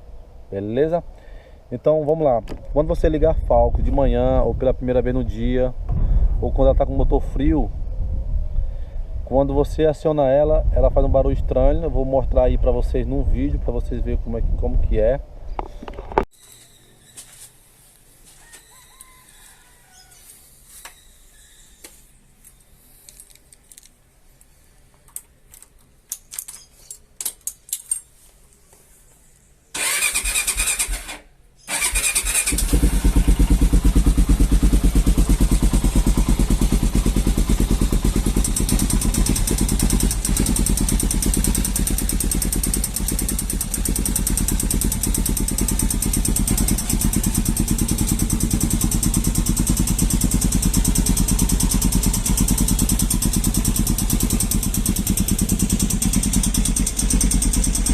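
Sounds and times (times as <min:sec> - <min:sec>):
starter cranking: 0:29.8 - 0:33.4
motorcycle engine idling: 0:31.7 - 0:57.9.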